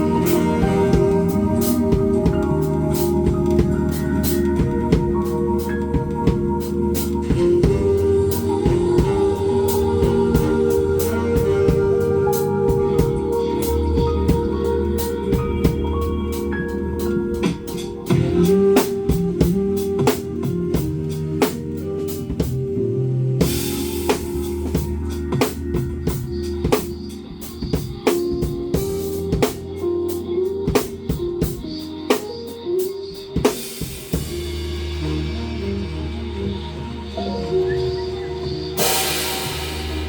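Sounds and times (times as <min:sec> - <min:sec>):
live band music: 0:00.0 - 0:40.0
cymbal crash: 0:33.9 - 0:40.0.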